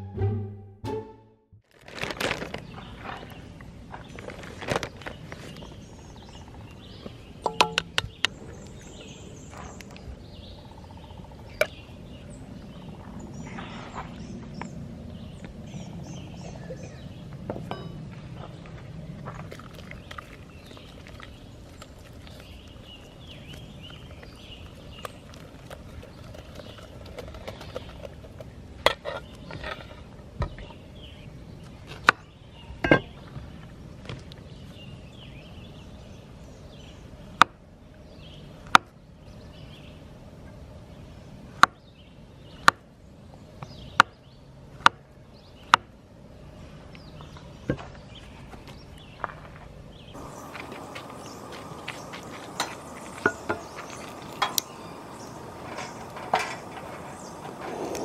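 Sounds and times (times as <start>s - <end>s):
sharp knocks: 7.4s - 8.1s.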